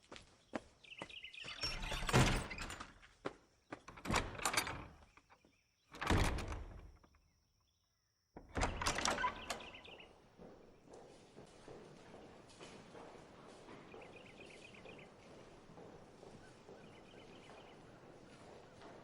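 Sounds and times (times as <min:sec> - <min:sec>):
heavy door thuds: 0:08.4 - 0:09.9.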